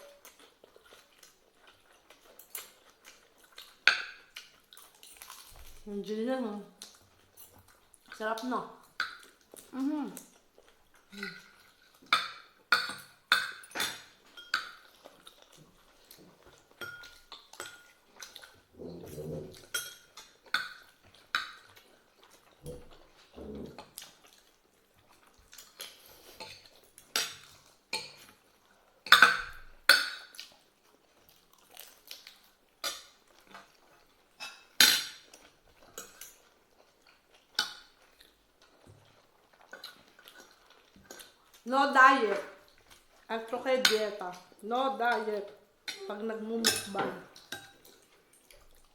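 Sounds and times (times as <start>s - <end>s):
cutlery clinking on plates: 12.1s - 14.8s, 16.8s - 18.0s, 26.4s - 28.3s, 29.1s - 30.4s, 34.4s - 35.3s, 46.6s - 47.9s.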